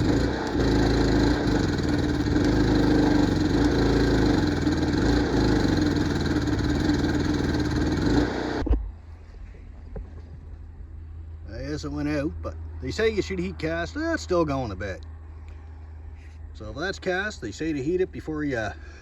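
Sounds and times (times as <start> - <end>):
arc welding buzzing crackle: 0.0 - 8.6.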